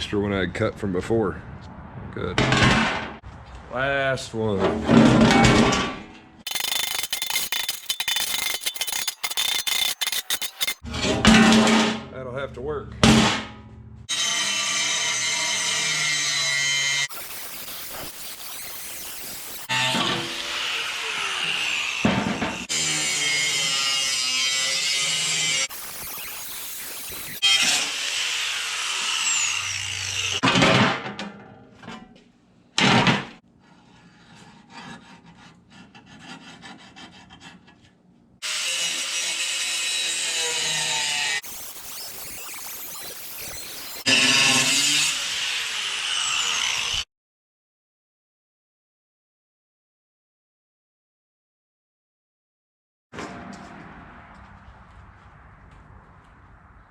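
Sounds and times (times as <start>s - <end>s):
power tool whining on metal: 6.5s - 10.8s, 17.0s - 30.4s, 38.4s - 47.0s.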